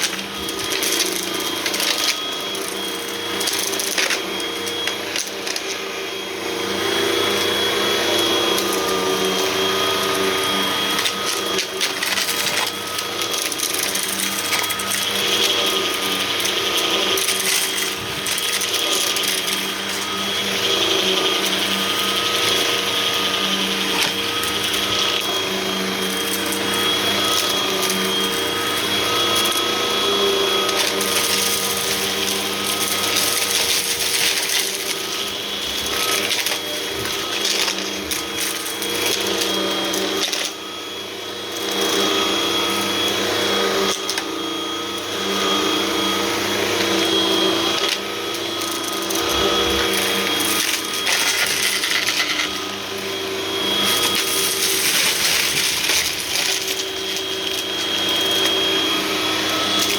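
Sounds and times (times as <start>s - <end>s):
vacuum cleaner running: 0.0s - 59.9s.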